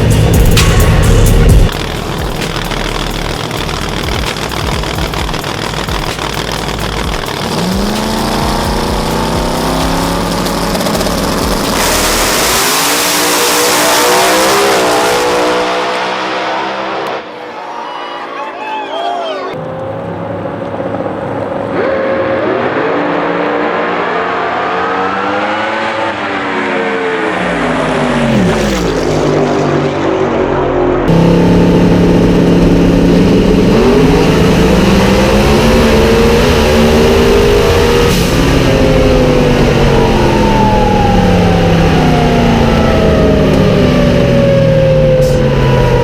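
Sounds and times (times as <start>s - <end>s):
racing car engine revving: 0.0s - 17.5s, 19.5s - 46.0s.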